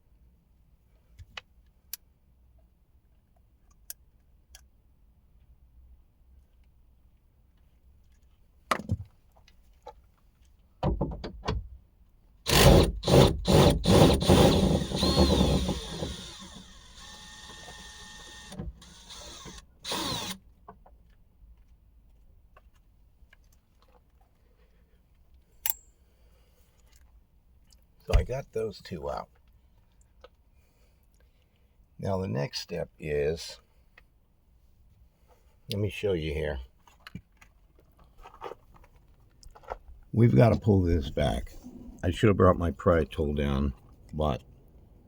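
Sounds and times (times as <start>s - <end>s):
cordless drill bursts: 12.5s - 20.4s.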